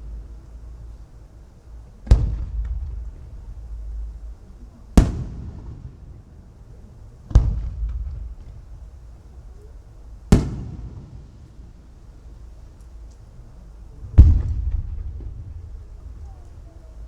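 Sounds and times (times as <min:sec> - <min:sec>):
firework shells booming: 0:02.0 - 0:17.0.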